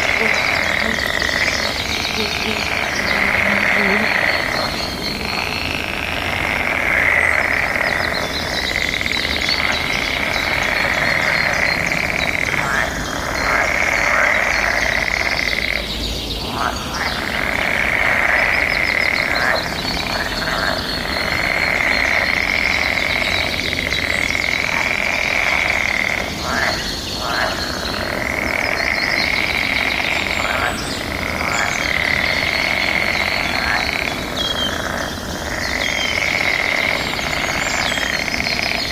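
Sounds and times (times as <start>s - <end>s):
continuous trilling: 0.0s - 16.0s
birds singing and chirping: 0.0s - 38.9s.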